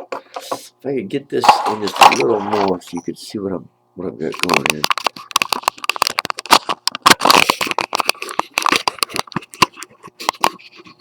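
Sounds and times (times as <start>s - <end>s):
handling clicks and crackles: 4.4s - 10.6s.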